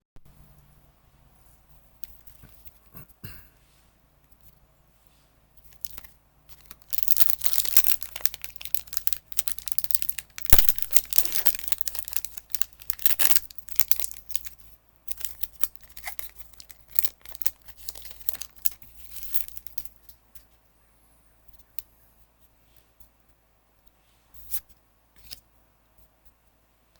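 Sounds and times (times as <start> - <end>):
foil wrapper tearing and crinkling: 5.7 - 19.9.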